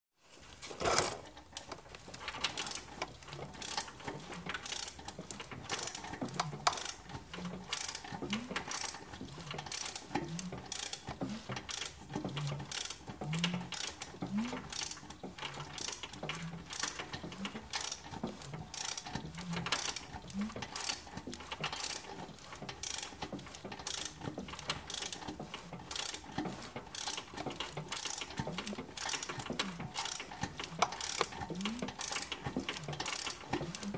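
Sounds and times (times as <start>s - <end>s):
sharp mechanical clicks: 11.7s - 25.3s, 25.9s - 33.9s.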